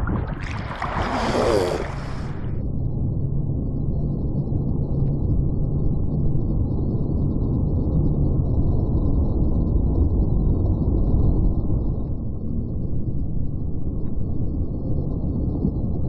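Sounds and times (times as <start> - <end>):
muffled surf: 0.0 - 2.6
wind buffeting microphone: 0.0 - 2.7.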